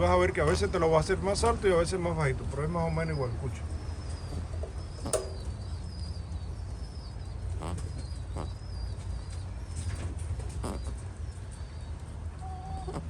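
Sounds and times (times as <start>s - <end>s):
rabbit rumbling: 0.0s - 13.0s
small birds chirping: 0.0s - 13.0s
sharp click: 5.0s - 5.5s
rabbit snuffles: 12.6s - 13.0s.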